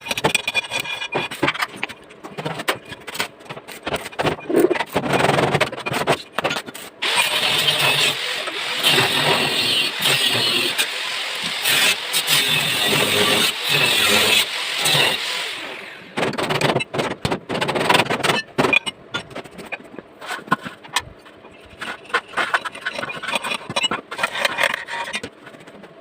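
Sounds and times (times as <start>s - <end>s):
knocks and clatter: 0.0s - 6.8s, 16.2s - 26.0s.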